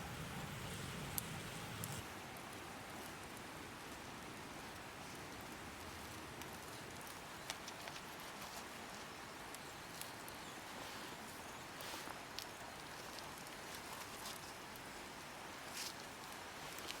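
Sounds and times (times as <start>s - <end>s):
campfire crackling: 0.0s - 17.0s
low steady hiss: 0.0s - 17.0s.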